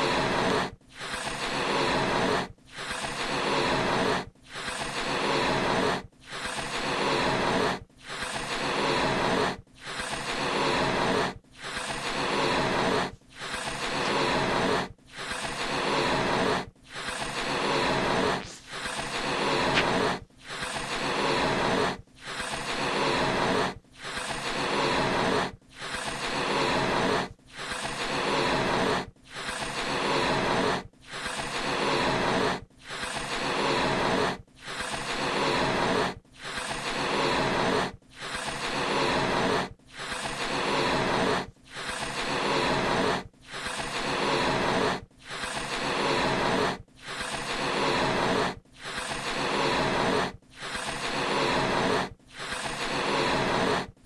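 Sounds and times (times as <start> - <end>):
breaths blowing up balloon: 0.0 - 54.0.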